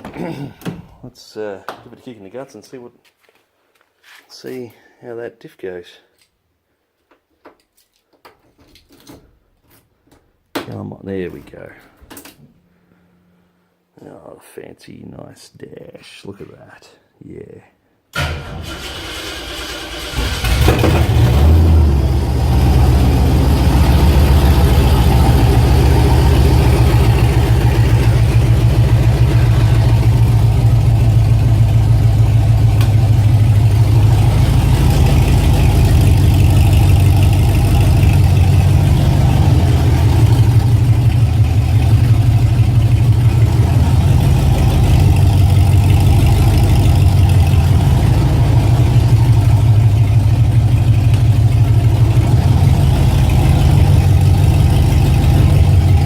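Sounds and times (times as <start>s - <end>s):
car engine running loud: 19.9s - 56.0s.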